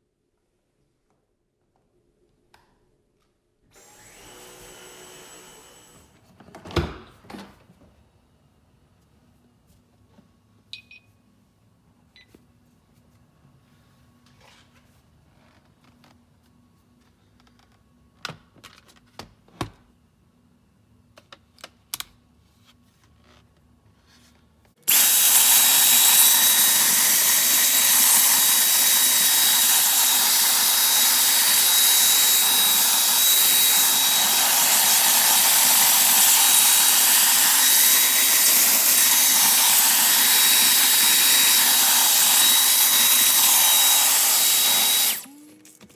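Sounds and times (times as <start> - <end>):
cordless vacuum running: 3.8 - 6.1, 24.9 - 45.4.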